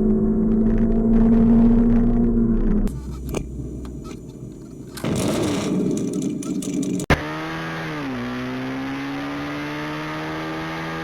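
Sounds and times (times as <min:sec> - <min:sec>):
motorcycle engine running: 0:00.0 - 0:07.2.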